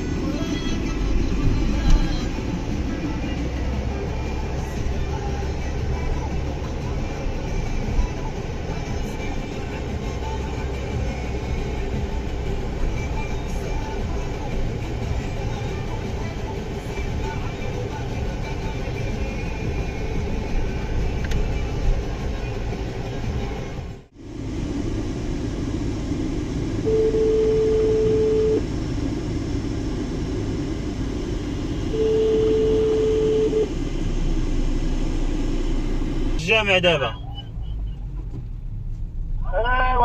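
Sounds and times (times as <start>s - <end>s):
low vehicle rumble: 0.0s - 40.0s
long steady beeps: 26.9s - 28.6s, 31.9s - 33.7s.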